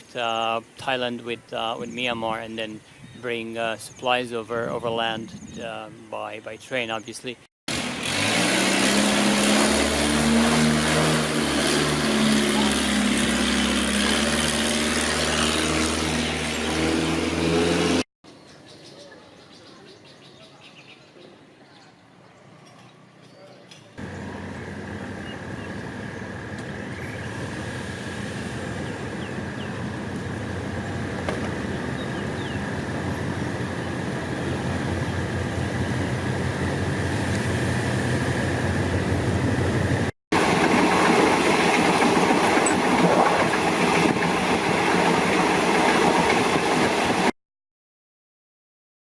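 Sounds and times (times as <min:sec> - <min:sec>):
train rattling on rails: 0:32.6 - 0:47.3.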